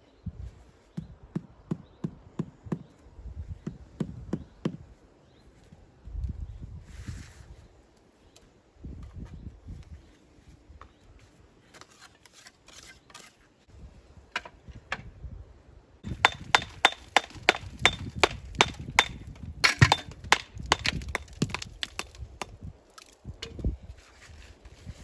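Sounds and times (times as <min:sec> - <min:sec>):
hammer striking stone: 0:16.1 - 0:22.6.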